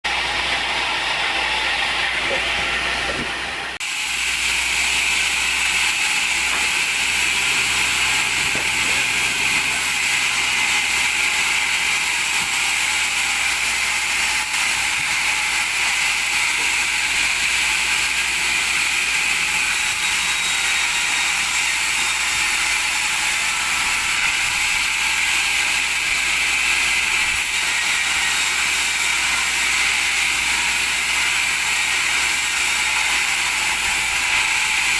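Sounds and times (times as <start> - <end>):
sawmill saw cutting wood: 0.0 - 34.9.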